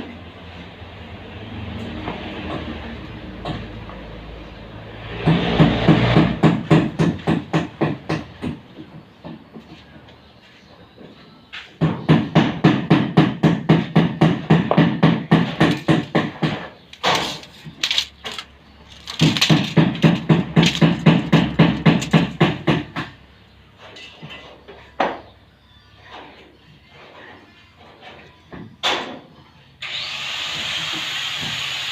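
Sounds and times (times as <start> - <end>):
rapid hammering: 5.2 - 8.6, 11.8 - 23.2.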